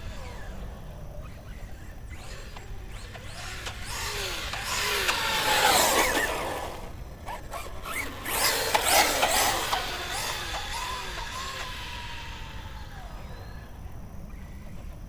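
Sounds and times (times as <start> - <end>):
electric motor whine: 0.0 - 15.0
tyres rushing: 2.0 - 14.0.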